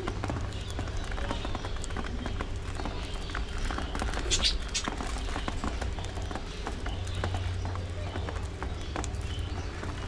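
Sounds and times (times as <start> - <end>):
high bird chirps: 4.2 - 5.0.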